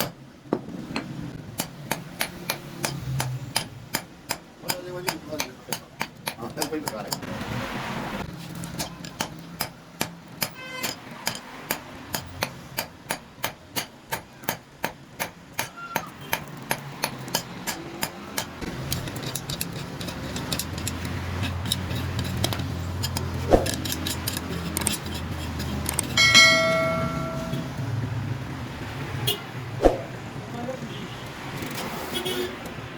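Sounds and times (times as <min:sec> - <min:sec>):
hammer blows on metal: 0:25.9 - 0:27.8
metallic strike ringing: 0:26.2 - 0:27.9.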